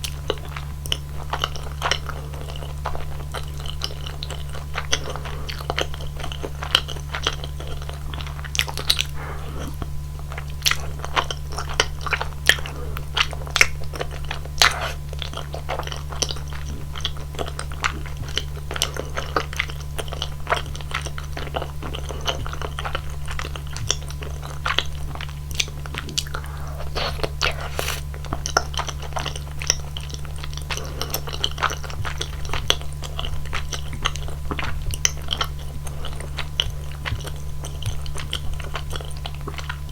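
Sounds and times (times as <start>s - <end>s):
chewing and biting food: 0.0s - 39.9s
steady low hum: 18.2s - 39.9s.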